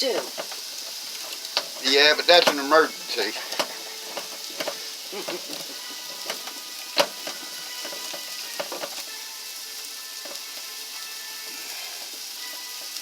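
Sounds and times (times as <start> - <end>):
steady hiss: 0.0 - 13.0
hand-cranked meat grinder squishing: 0.2 - 9.1.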